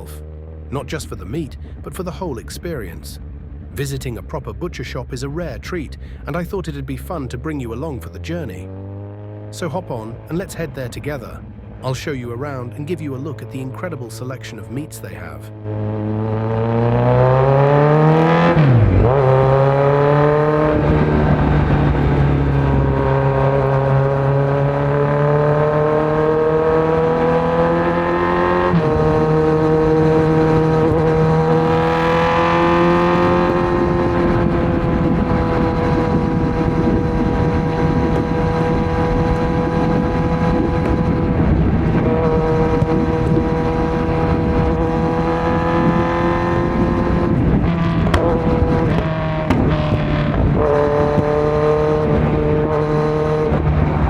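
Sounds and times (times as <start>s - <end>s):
motorcycle engine revving: 0.0s - 0.9s, 7.1s - 14.3s, 15.5s - 54.0s.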